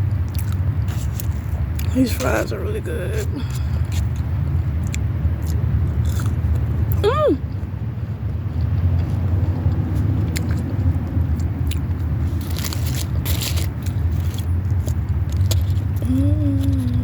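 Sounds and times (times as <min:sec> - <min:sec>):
person chewing food: 0:00.0 - 0:17.0
rustling crackle: 0:12.2 - 0:17.0.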